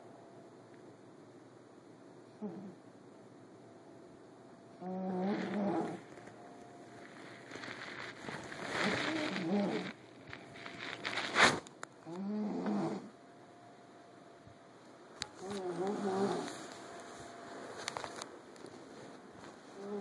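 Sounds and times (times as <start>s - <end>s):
pitched snores: 2.4s - 2.8s, 4.8s - 6.0s, 8.9s - 10.0s, 12.1s - 13.2s, 15.5s - 16.6s.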